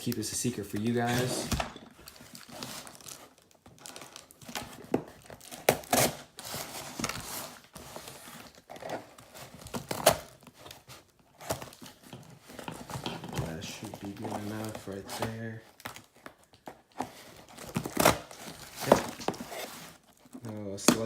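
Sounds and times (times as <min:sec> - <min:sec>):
package crinkling and tearing: 0:02.0 - 0:12.2, 0:12.8 - 0:21.0.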